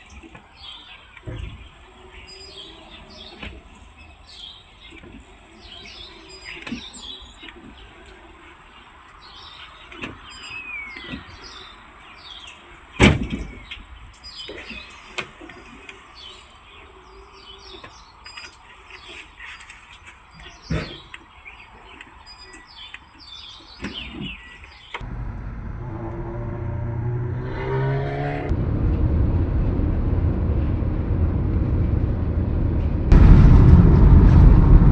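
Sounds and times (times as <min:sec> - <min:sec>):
birds chirping: 0:00.0 - 0:25.1.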